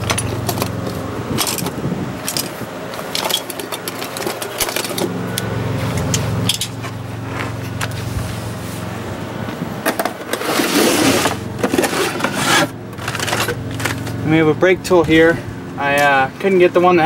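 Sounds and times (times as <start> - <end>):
metal tools clinking and rattling: 0.0 - 7.0, 11.1 - 14.3
steady low hum: 0.0 - 17.0.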